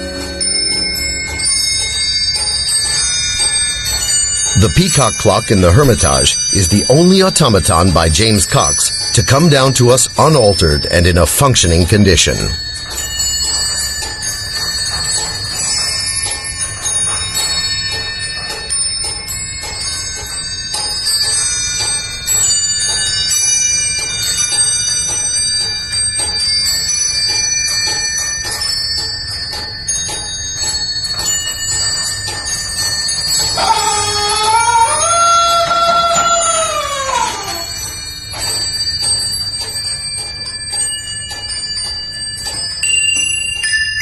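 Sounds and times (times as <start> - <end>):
small bells tinkling: 0.0 - 44.0
automaton cockerel crowing: 33.6 - 37.8.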